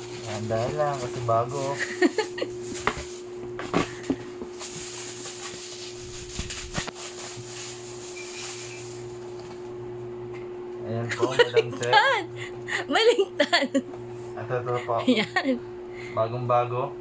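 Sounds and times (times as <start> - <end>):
packaging rustling: 0.0 - 9.7
steady hum: 0.0 - 17.0.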